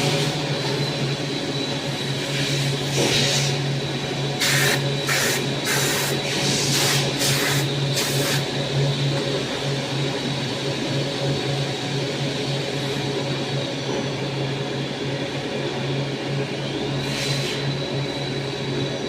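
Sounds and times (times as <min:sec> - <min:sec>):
machine humming with high whine: 0:00.0 - 0:19.0
short hissing bursts: 0:04.4 - 0:08.4.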